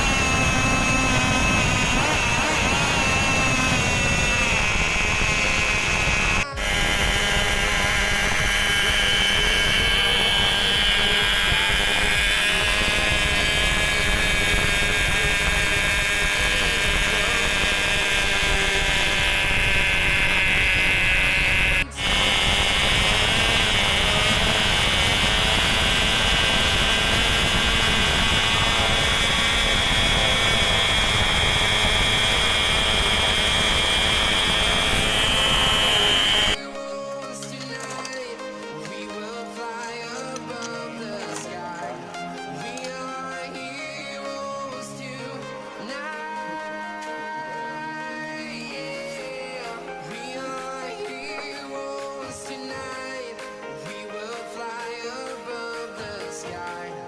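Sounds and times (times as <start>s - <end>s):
model plane engine whining: 0.0s - 36.6s.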